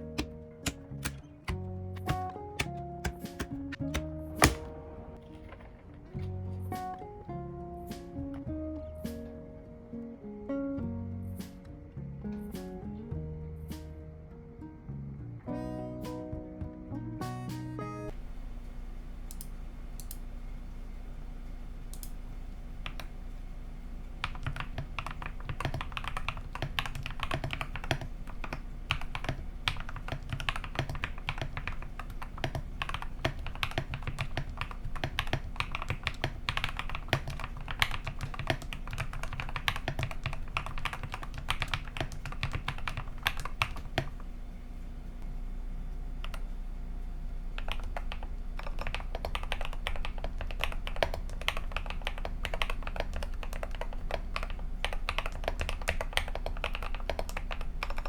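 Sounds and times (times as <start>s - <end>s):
typing on mechanical keyboard: 0.0s - 4.7s, 22.8s - 23.1s, 24.2s - 44.2s, 47.6s - 58.0s.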